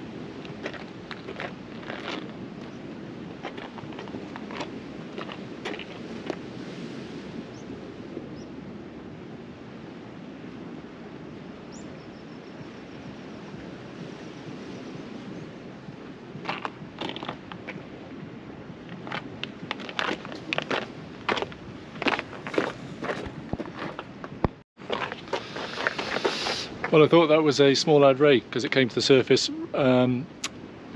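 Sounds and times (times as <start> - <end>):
sea noise: 0.0 - 30.9
wind: 0.0 - 30.9
sharp clicks and crunches: 18.9 - 21.5.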